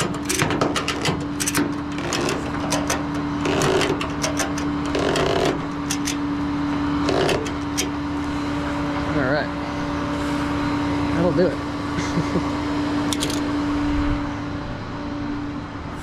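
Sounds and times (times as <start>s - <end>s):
ratchet strap clicking: 0.0s - 6.2s, 7.0s - 8.0s
steady hum: 0.0s - 16.0s.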